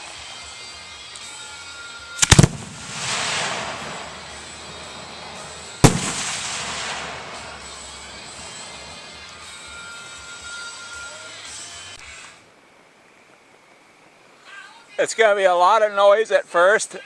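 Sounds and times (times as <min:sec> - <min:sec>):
hissing crackle: 0:02.2 - 0:10.1
fireworks bangs: 0:02.2 - 0:10.2.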